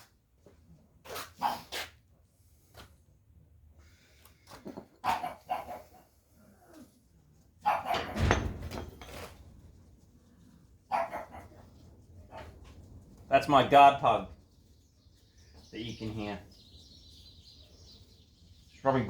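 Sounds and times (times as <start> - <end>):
dog barking: 1.4 - 1.8, 5.0 - 6.1, 7.6 - 8.2, 10.9 - 11.7.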